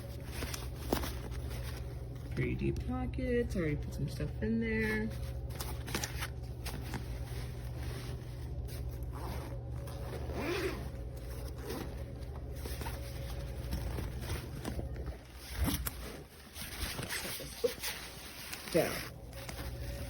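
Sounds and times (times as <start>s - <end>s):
bag fabric rustling: 0.0s - 2.3s, 4.8s - 20.0s
backpack zippers being pulled: 9.0s - 12.1s.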